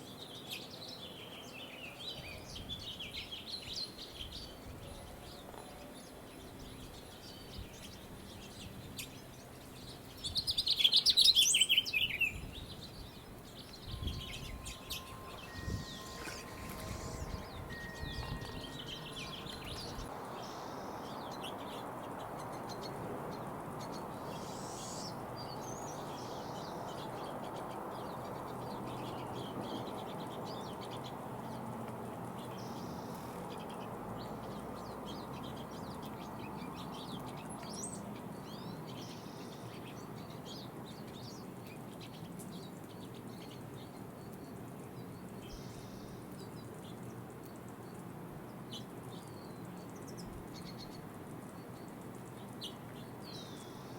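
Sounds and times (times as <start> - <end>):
songbirds chirping: 0.0 - 53.9
buzzy bird trills: 13.6 - 20.8.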